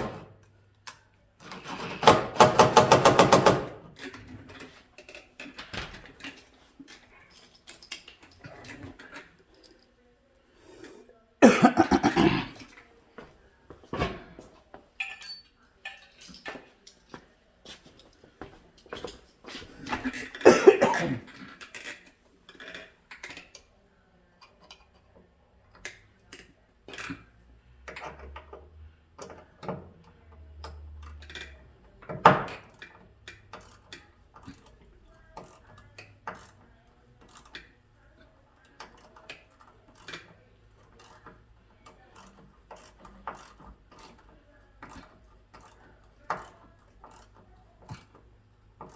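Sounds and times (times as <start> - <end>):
hand tools clicking on metal: 0.8 - 9.2, 38.7 - 48.2.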